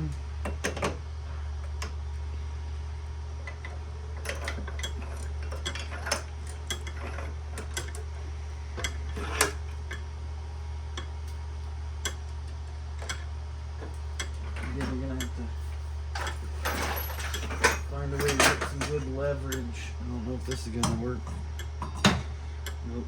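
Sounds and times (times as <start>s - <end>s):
steady low hum: 0.0s - 23.0s
small metal parts clinking: 16.1s - 19.0s.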